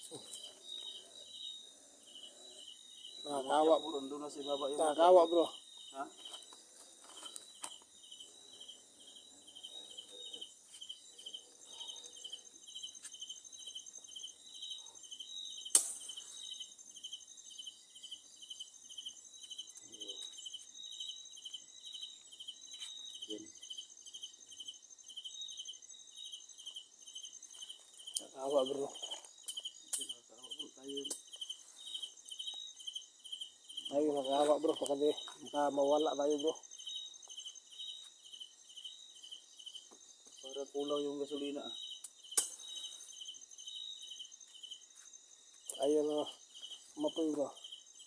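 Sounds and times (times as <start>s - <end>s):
insects chirping: 0.0s - 48.0s
sharp click: 15.7s - 16.1s.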